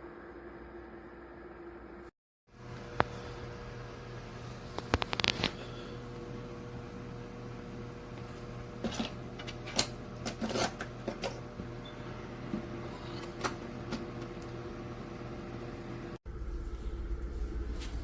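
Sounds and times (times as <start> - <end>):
dehumidifier fan hum: 2.6 - 18.0
deep low hum: 16.3 - 18.0.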